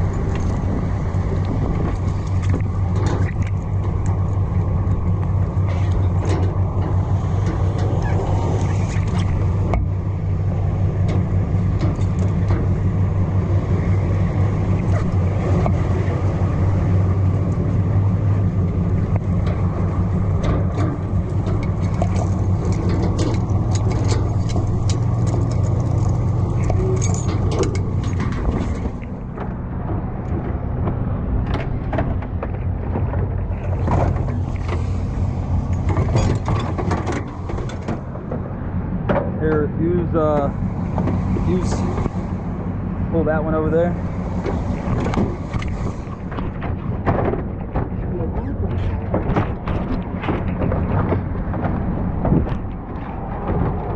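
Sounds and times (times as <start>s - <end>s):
clinks and rattles: 0.0s - 9.9s, 10.9s - 13.4s, 18.9s - 30.6s, 31.4s - 42.2s
vehicle engine idling: 0.0s - 53.9s.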